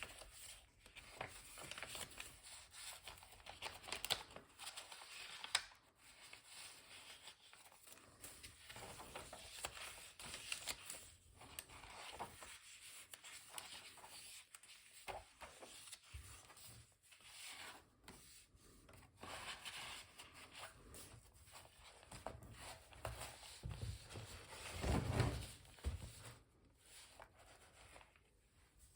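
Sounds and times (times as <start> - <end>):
paper pages rustling: 0.0 - 28.4.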